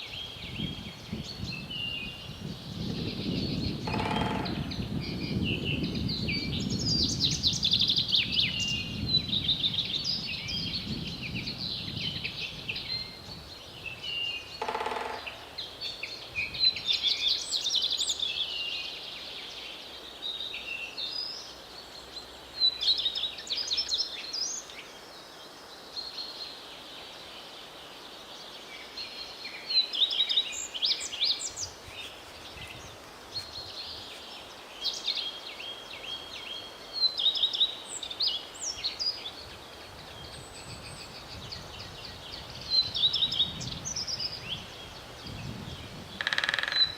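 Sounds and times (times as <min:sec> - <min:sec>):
small birds chirping and trilling: 0:28.2 - 0:46.9.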